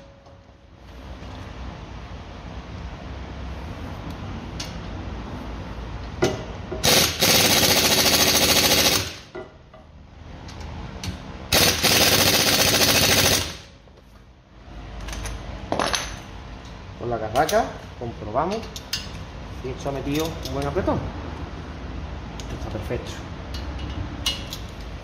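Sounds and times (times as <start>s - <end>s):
pneumatic impact wrench hammering: 6.7s - 9.4s, 11.5s - 13.7s.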